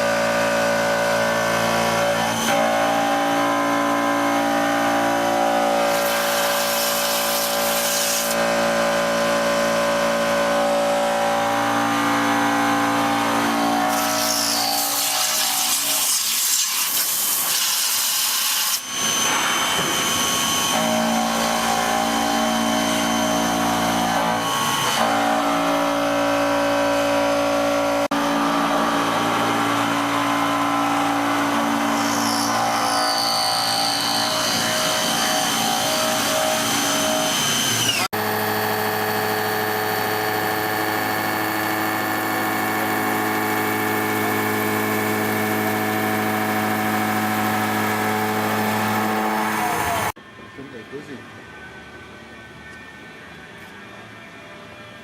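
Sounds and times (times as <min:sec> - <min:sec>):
milling spindle whine: 0:28.6 - 0:50.1.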